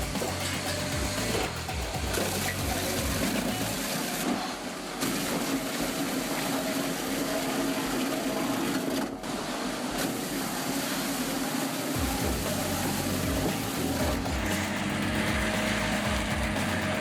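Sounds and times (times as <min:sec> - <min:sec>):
heavy machinery hum: 0:12.0 - 0:17.0.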